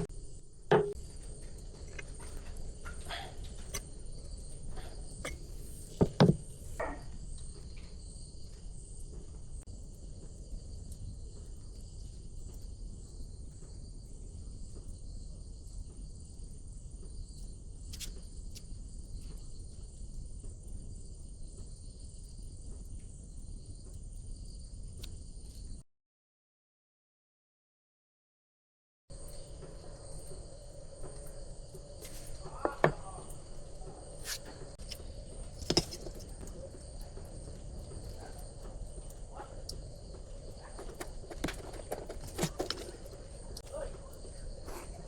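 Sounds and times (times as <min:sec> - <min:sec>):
insects chirping: 0:00.0 - 0:25.8, 0:29.1 - 0:45.0
sharp knocks: 0:00.7 - 0:01.0, 0:05.3 - 0:07.0.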